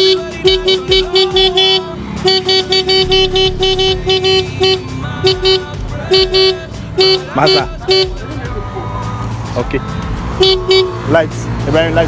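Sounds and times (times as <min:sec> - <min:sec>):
motorcycle horn beeps: 0:00.0 - 0:08.3, 0:10.4 - 0:11.1.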